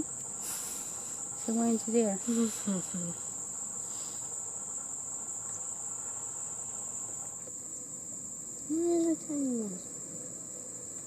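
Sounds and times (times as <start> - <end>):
insects trilling: 0.0 - 11.0.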